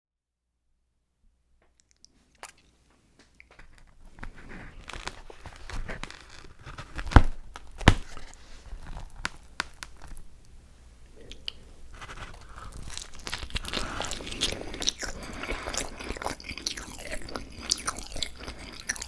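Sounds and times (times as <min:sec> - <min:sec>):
packaging crinkling and tearing: 0:03.6 - 0:10.3, 0:11.8 - 0:19.0.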